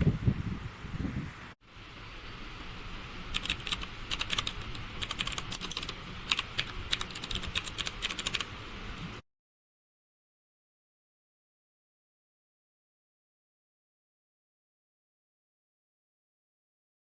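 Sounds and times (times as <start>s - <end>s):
mechanical keyboard typing: 3.3s - 8.5s.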